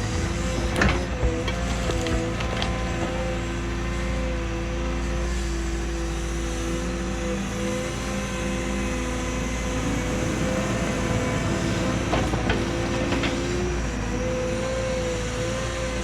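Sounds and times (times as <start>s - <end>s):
excavator clanks: 0.0s - 3.9s, 10.9s - 13.8s
diesel engine running: 0.0s - 15.8s.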